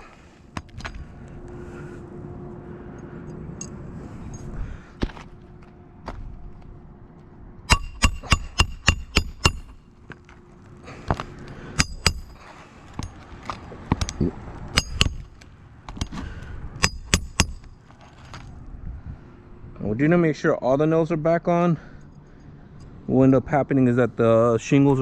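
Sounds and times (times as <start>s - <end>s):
hammer striking roofing nails: 7.7s - 9.8s, 11.8s - 13.2s, 15.9s - 17.7s.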